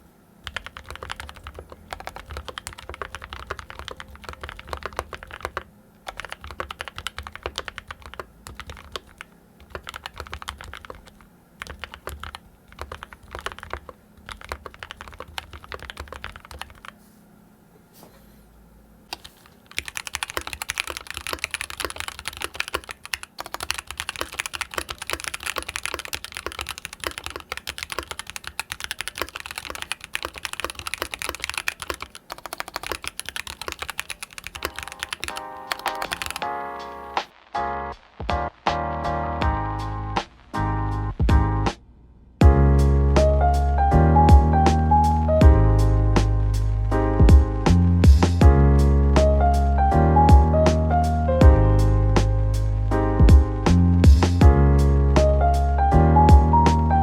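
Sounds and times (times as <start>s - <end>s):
mechanical keyboard typing: 0.4s - 17.0s, 19.1s - 37.1s.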